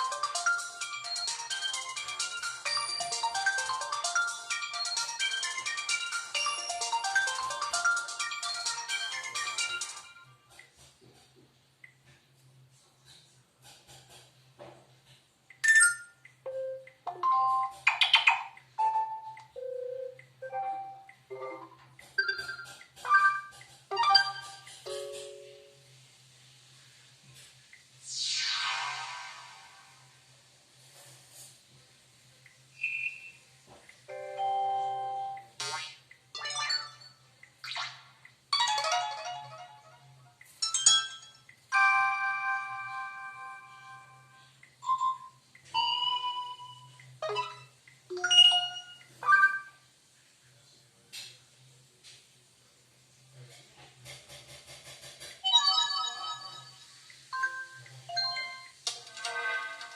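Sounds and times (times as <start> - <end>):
electronic ringtone melody: 0.0 - 10.3, 15.6 - 17.8, 18.8 - 25.5, 38.5 - 49.8.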